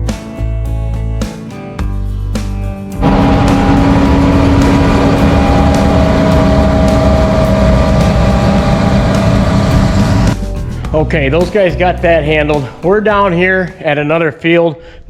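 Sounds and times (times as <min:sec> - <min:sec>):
diesel engine running: 0:03.0 - 0:10.4
guitar music: 0:03.0 - 0:10.4.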